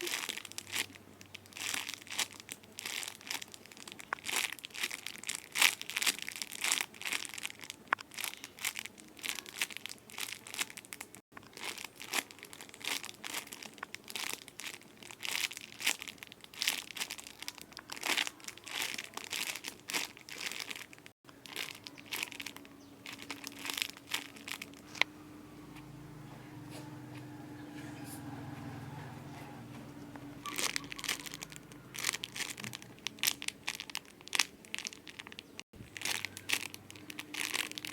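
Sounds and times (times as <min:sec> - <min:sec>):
plastic packaging crinkling: 0:00.0 - 0:25.2, 0:30.2 - 0:37.9
low steady hum: 0:21.0 - 0:37.9.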